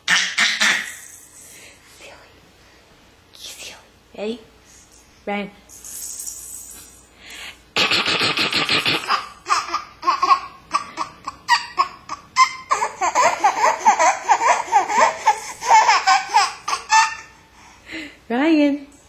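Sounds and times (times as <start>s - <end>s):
baby laughing: 0.0s - 1.1s, 7.8s - 17.4s.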